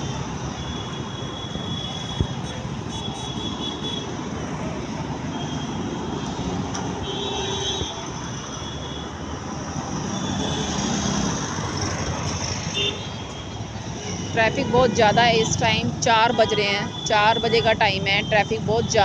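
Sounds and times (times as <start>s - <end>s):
heavy road traffic passing: 0.0s - 19.0s.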